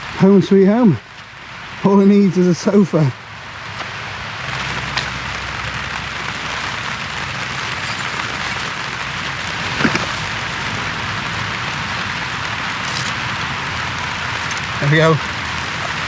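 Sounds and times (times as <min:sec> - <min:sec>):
steady rain: 0:00.0 - 0:16.0.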